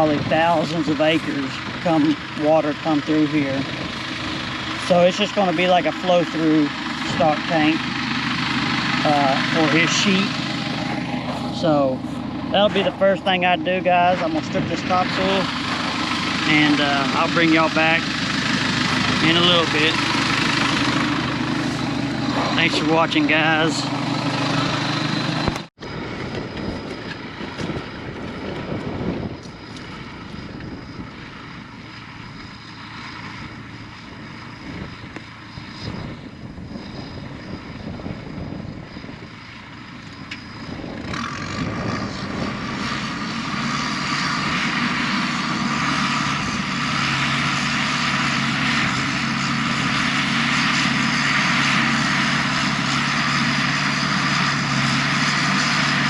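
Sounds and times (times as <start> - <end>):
heavy diesel engine revving: 0.0 - 25.7, 40.8 - 56.0.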